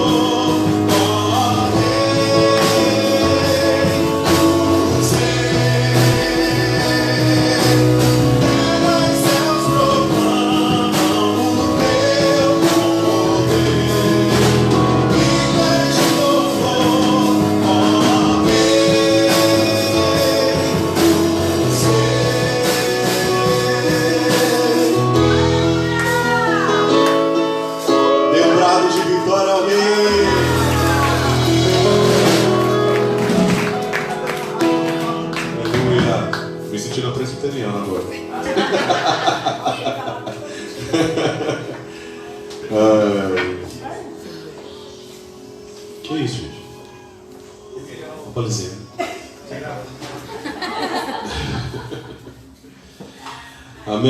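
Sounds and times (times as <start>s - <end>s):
person singing: 0.0s - 32.7s
worship band playing: 0.0s - 54.0s.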